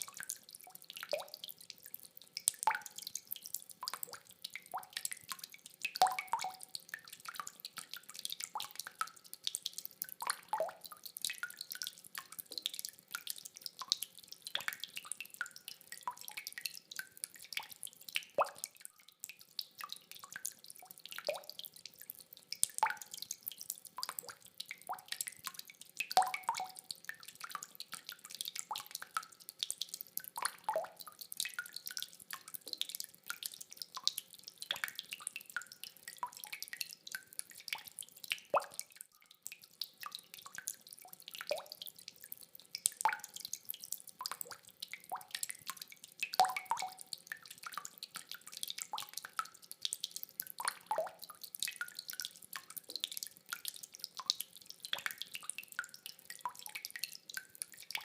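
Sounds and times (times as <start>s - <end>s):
rainwater dripping: 0.0s - 58.0s.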